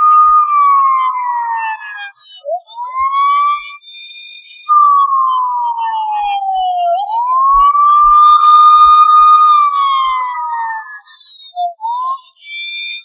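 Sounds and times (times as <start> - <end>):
police siren wailing: 0.0 - 3.8, 4.7 - 11.1.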